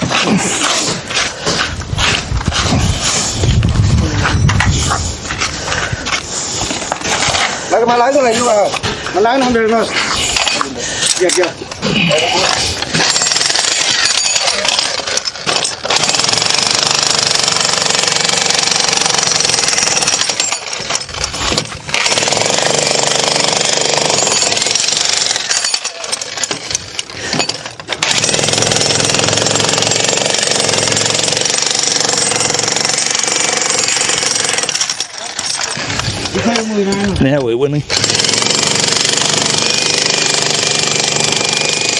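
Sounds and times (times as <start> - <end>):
jackhammer breaking concrete: 12.4 - 36.6, 37.9 - 41.9.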